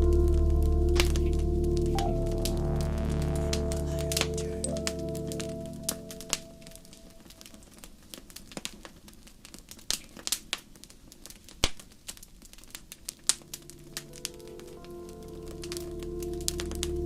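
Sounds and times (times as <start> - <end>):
soft music pad: 0.0 - 7.6, 13.4 - 17.0
logs crackling and popping: 0.0 - 17.0.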